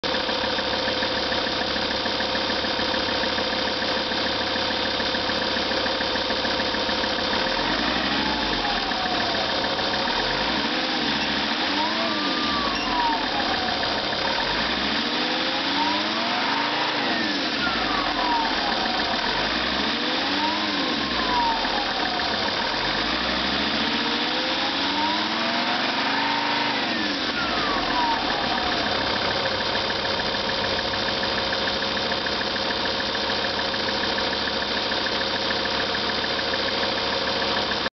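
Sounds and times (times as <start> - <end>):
diesel engine revving and idling: 0.0 - 37.9
engine whimpering noise: 7.4 - 30.2.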